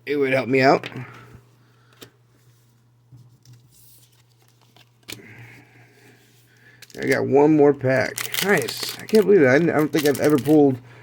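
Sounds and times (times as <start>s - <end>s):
trading cards rustling: 3.3s - 10.8s.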